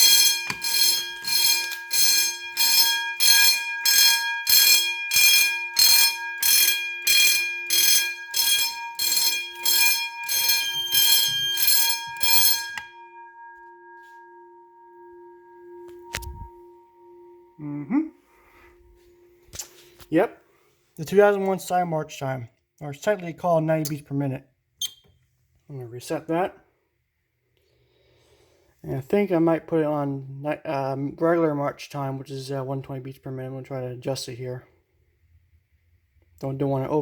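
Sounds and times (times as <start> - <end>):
fire alarm bell ringing in bursts: 0.0 - 17.6
faint steady tone: 10.8 - 20.7.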